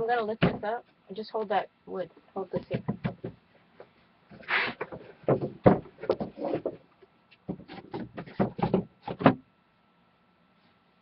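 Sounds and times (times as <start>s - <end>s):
wooden boards knocking and scraping: 2.5s - 3.4s, 4.3s - 9.4s.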